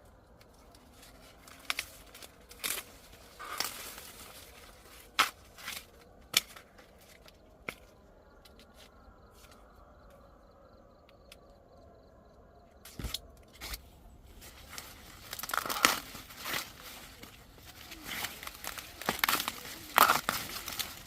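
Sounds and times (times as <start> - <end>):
dry corn husks rustling and tearing: 0.2 - 9.7, 12.8 - 21.0.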